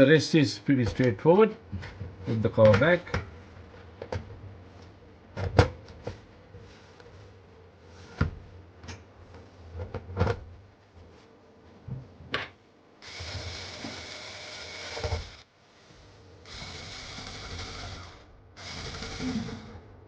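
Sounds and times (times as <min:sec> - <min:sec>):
steady whirring: 0:13.0 - 0:15.4, 0:16.4 - 0:19.9.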